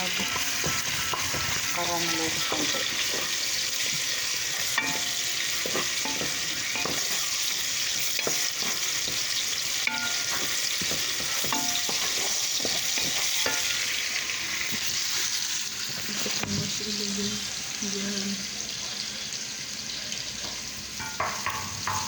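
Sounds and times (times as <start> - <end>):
food sizzling in a pan: 0.0 - 22.0
spoon knocking and scraping: 0.2 - 15.0, 21.0 - 22.0.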